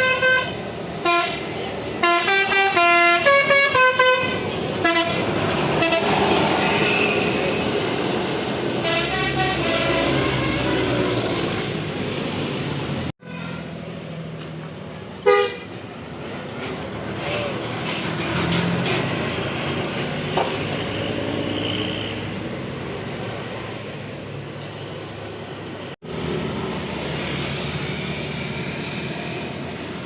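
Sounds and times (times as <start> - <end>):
bus musical air horn melody: 0.0 - 7.6, 8.8 - 11.2, 13.2 - 13.8, 15.2 - 15.6
road traffic noise: 0.0 - 30.0
short horn blast: 8.8 - 11.1.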